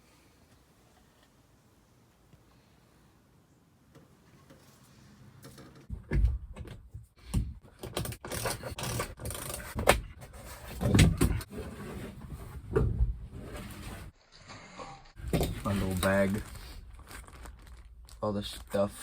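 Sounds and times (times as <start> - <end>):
objects knocking and scraping: 14.7 - 16.5.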